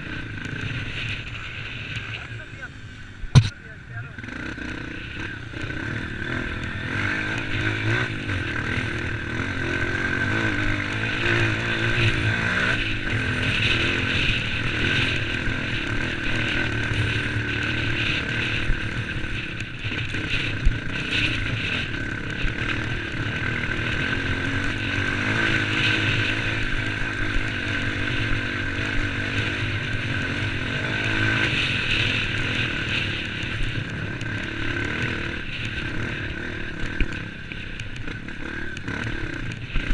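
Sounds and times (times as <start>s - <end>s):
sharp knocks: 3.3s - 3.6s
off-road vehicle engine revving: 3.3s - 39.9s.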